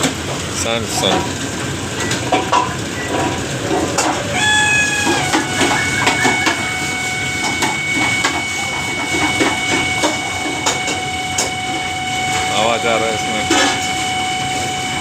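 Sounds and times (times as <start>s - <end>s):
microwave oven whine: 0.0s - 15.0s
steady electronic tone: 4.2s - 13.4s.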